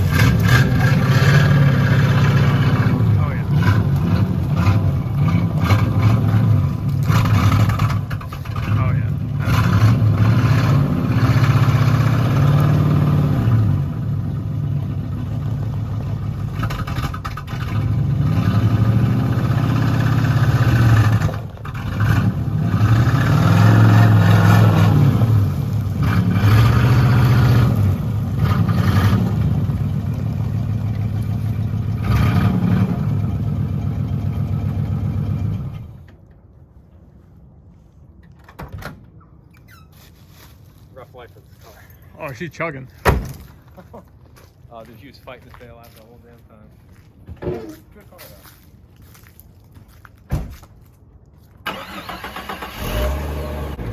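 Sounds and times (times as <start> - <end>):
rough running car engine revving: 0.0 - 36.0, 51.7 - 53.9.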